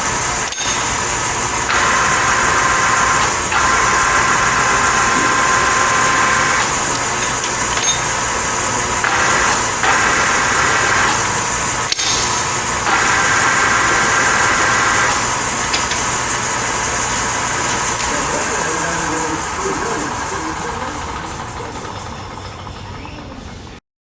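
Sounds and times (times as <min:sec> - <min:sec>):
high gear whine: 0:00.0 - 0:23.8
lathe running: 0:00.0 - 0:23.8
sharp click: 0:00.4 - 0:01.1, 0:09.0 - 0:13.1.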